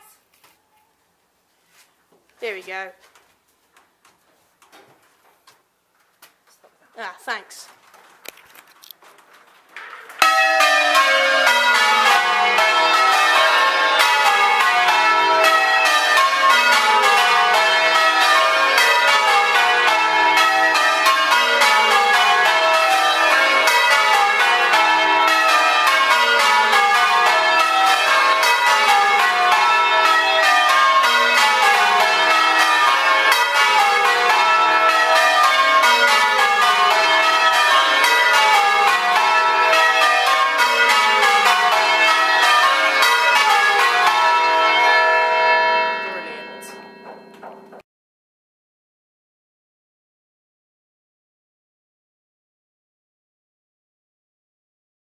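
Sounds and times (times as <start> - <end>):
church bells ringing in rounds: 9.8 - 47.8.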